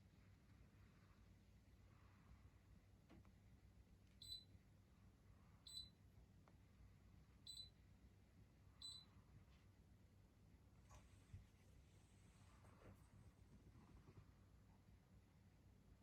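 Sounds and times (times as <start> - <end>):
air conditioner high-pitched chirps: 3.9 - 9.9.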